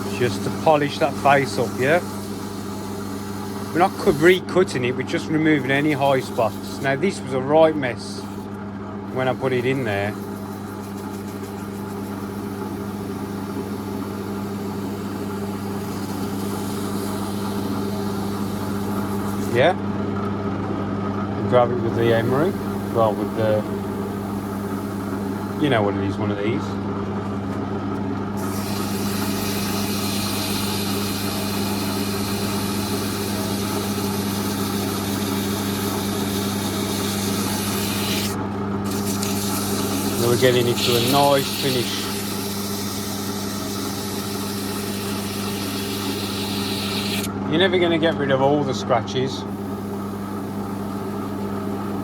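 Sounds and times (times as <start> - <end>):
lathe running hum: 0.0 - 48.6, 49.3 - 52.0.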